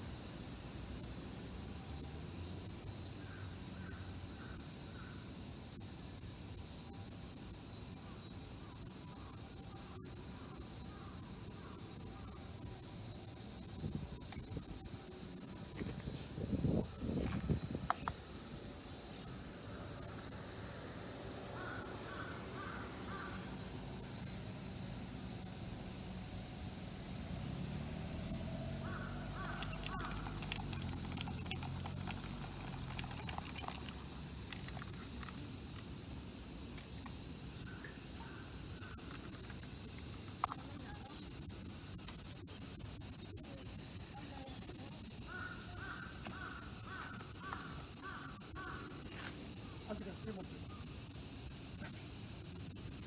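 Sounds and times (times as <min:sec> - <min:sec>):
birds calling: 0:28.8 - 0:34.0.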